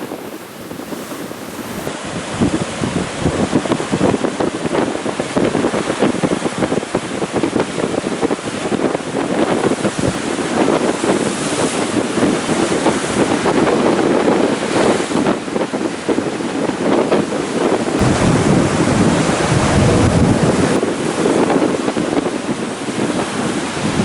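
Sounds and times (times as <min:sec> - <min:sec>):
ocean surf breaking: 0:00.0 - 0:02.2, 0:17.9 - 0:24.0
wind buffeting microphone: 0:00.0 - 0:24.0.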